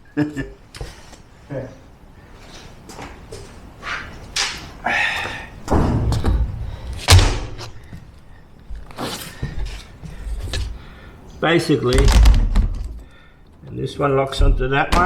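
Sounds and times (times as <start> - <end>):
floor tiles thumping and knocking: 5.6 - 8.1, 11.9 - 13.0.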